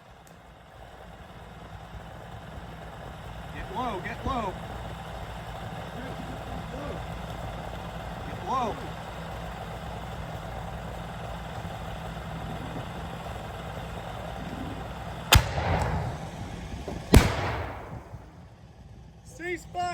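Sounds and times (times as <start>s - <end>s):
vehicle engine running: 0.0s - 19.9s
rocket launch bangs: 15.3s - 18.4s.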